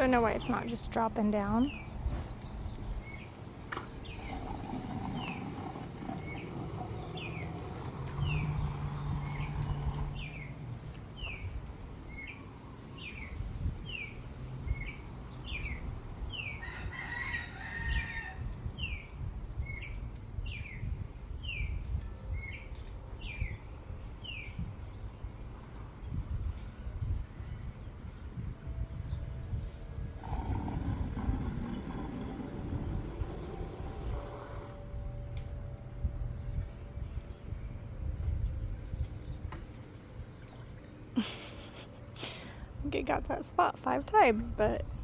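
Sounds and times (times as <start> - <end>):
rooster crowing: 16.6 - 18.4.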